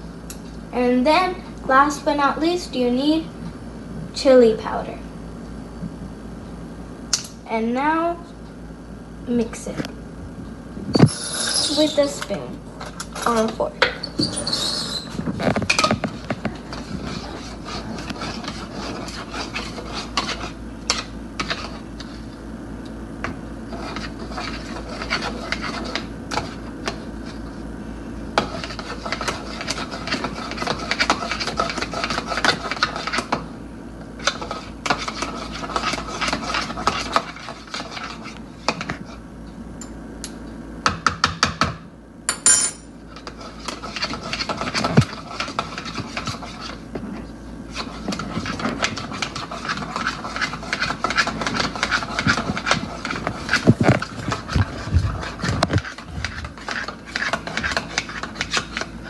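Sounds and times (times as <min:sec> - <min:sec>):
utensil scraping and clinking bowl: 0:11.0 - 0:13.6, 0:23.7 - 0:27.4, 0:28.4 - 0:33.3, 0:34.2 - 0:38.9, 0:42.4 - 0:46.8, 0:47.7 - 0:58.9.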